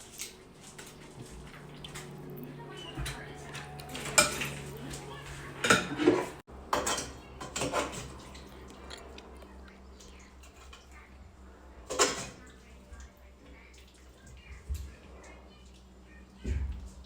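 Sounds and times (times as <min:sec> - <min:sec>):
dishes and cutlery clinking: 0:00.0 - 0:09.2, 0:11.9 - 0:12.5.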